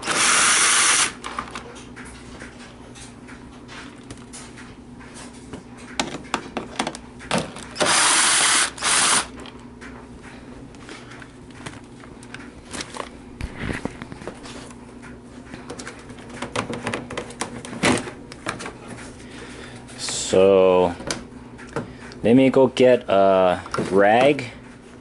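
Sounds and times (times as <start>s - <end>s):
electric drill spinning: 0.0s - 1.2s, 7.8s - 9.4s
handling clicks and knocks: 15.0s - 18.8s.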